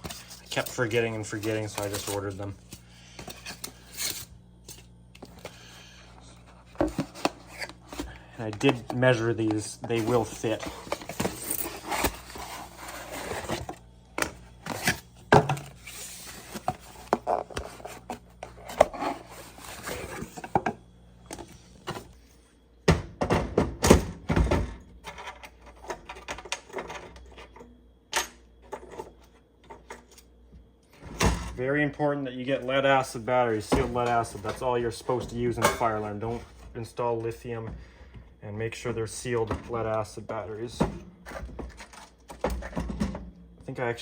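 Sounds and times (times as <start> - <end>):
packaging and foam rustling: 0.0 - 4.3.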